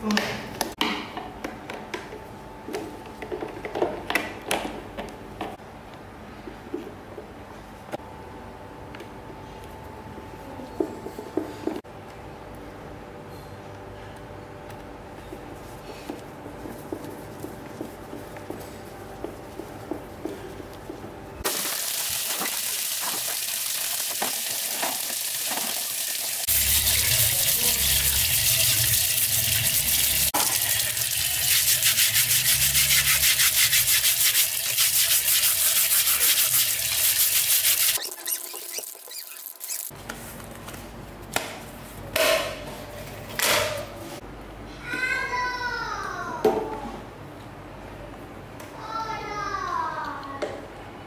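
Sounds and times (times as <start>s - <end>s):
electric table fan running: 26.5s - 38.2s.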